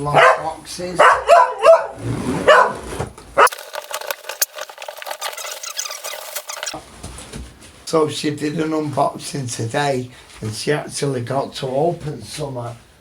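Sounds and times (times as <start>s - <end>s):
crackling rustling clicks: 3.4s - 6.8s.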